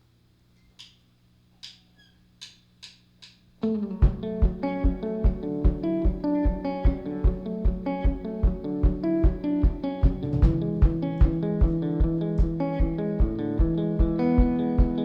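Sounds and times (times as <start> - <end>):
acoustic guitar chords: 3.6 - 15.0
steady low drum thump: 4.0 - 15.0.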